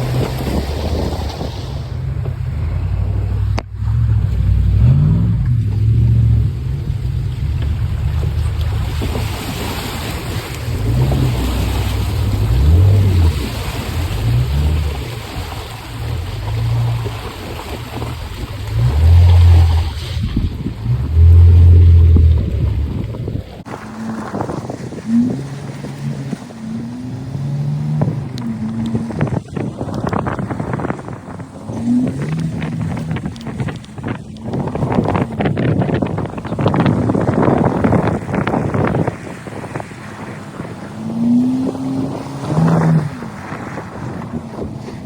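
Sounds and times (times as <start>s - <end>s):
car engine revving: 0.0s - 45.0s
wind buffeting microphone: 0.0s - 45.0s.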